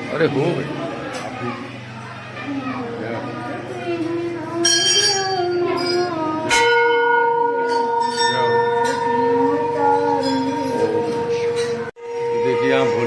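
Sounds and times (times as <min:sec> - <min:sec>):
temple bells ringing: 0:04.6 - 0:13.0
voices singing: 0:07.4 - 0:13.0.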